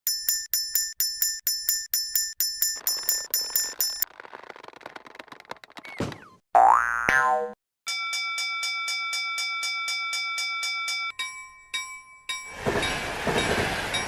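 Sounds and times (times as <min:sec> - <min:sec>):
clattering noise: 0:02.8 - 0:06.4
level crossing alarm bell ringing: 0:07.9 - 0:14.0.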